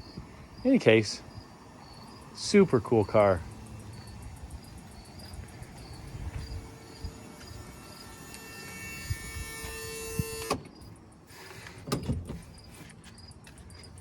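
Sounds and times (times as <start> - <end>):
crickets chirping: 0.0 - 14.0
small electric motor whirring: 3.4 - 10.6
motor stopping with a clunk: 7.4 - 10.7.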